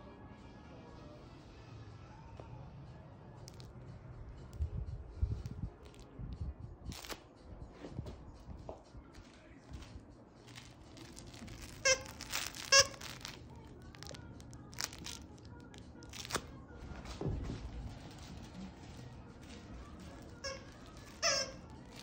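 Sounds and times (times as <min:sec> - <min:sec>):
crinkly rustling: 0:06.9 - 0:07.2, 0:09.7 - 0:22.0
high-pitched squeaks: 0:10.5 - 0:13.4, 0:20.0 - 0:22.0.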